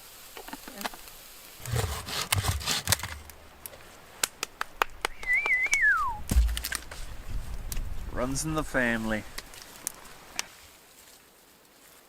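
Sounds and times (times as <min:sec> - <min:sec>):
objects clicking and knocking: 0:01.6 - 0:03.3.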